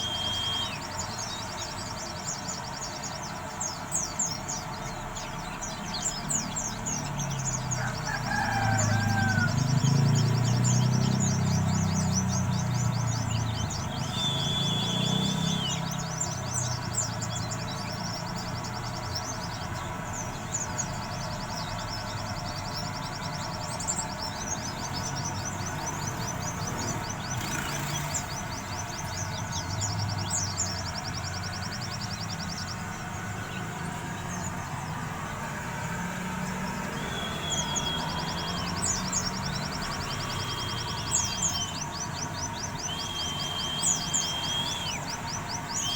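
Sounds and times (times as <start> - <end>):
held high bird whistle: 0.0 - 1.1, 13.8 - 16.2, 36.5 - 41.8, 42.7 - 45.9
white-eye twittering: 0.0 - 45.9.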